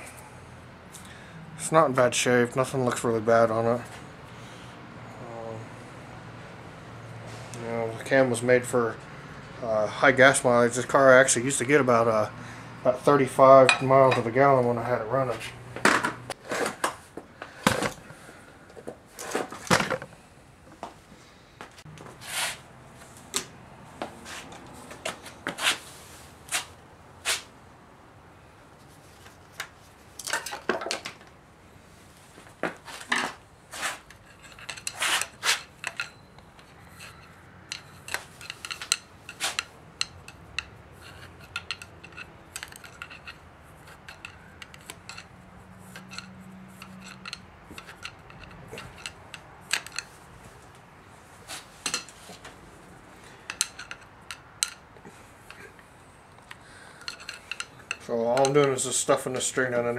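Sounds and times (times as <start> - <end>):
metal tools clinking: 13.5 - 14.6, 30.2 - 31.1, 34.1 - 50.2, 53.2 - 55.8, 56.5 - 59.9.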